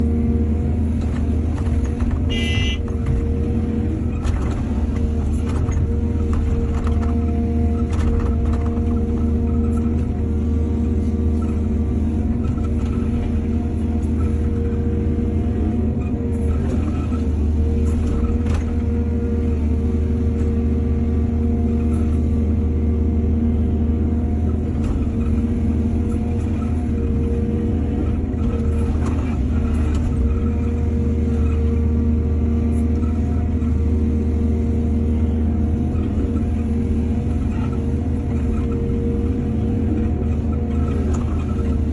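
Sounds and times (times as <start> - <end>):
diesel engine under load: 0.0 - 41.9.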